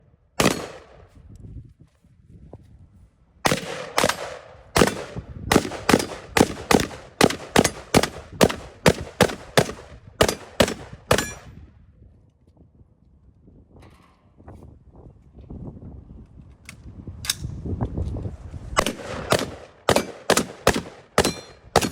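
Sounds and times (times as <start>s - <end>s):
rifle shots: 0.4s - 1.1s, 3.5s - 11.5s, 18.8s - 21.9s.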